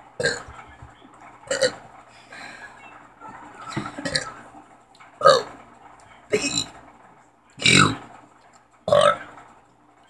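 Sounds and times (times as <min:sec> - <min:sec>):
person burping: 0:00.2 - 0:00.5, 0:01.5 - 0:01.8, 0:04.0 - 0:04.3, 0:05.2 - 0:05.5, 0:08.9 - 0:09.2.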